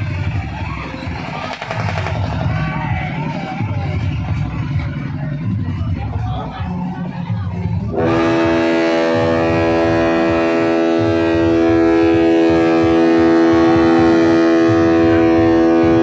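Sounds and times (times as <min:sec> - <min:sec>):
low uneven rumble: 0:00.0 - 0:16.0
ship's horn blast: 0:07.9 - 0:16.0.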